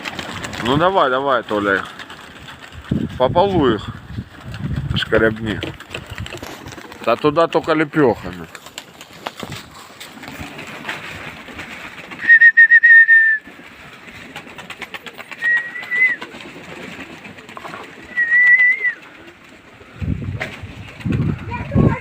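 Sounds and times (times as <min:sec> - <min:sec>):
faint wind rustle: 0:00.0 - 0:12.3, 0:13.4 - 0:22.0
loud high whistling: 0:12.2 - 0:13.5, 0:15.4 - 0:16.2, 0:18.1 - 0:19.0.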